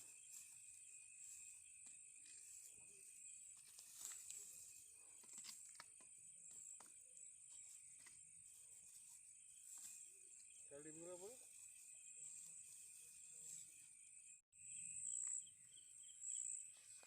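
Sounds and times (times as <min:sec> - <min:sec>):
high-pitched insect chorus: 0:00.0 - 0:17.0.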